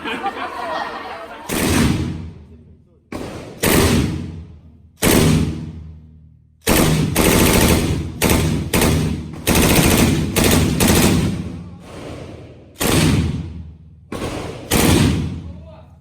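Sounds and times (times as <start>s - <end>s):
gunshots: 1.4s - 2.5s, 3.1s - 5.9s, 6.6s - 15.6s.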